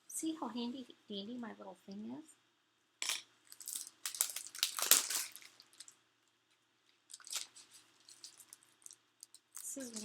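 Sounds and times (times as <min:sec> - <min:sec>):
plastic wrapper crinkling: 0:03.5 - 0:06.0, 0:06.9 - 0:10.0.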